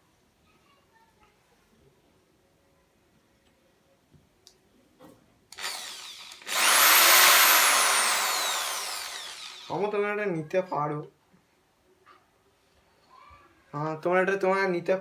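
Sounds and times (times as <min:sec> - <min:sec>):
electric drill whining: 0:05.6 - 0:09.9.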